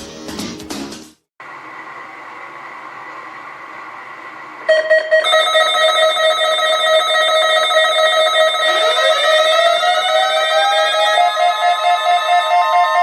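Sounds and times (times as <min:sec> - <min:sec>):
loud electronic beeping alarms: 0:04.7 - 0:13.0
steady warning alarm tone: 0:04.7 - 0:13.0.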